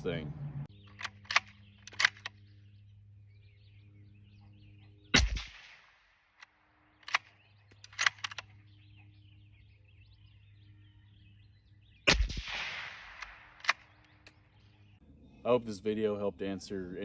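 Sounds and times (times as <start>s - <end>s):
sharp metallic clicks: 0.8s - 2.4s, 5.2s - 8.6s, 12.1s - 14.5s
suppressed rifle shot: 5.1s - 8.5s, 12.0s - 14.2s.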